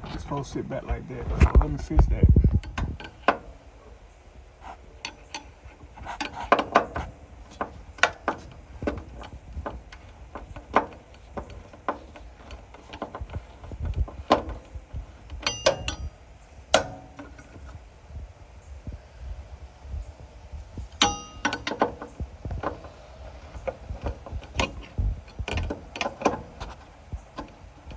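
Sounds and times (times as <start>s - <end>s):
clicks and knocks of hand work: 4.6s - 17.8s, 21.0s - 27.9s
short metallic ring: 15.4s - 16.2s, 21.0s - 21.8s.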